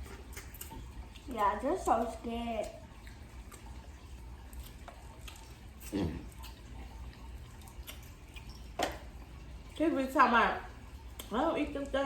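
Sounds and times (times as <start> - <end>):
wet eating noises: 0.0 - 12.0
short slurp: 5.3 - 7.0.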